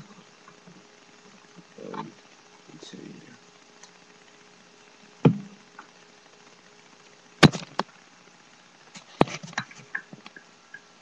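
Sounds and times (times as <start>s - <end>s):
sharp plastic clatter: 7.4s - 7.9s.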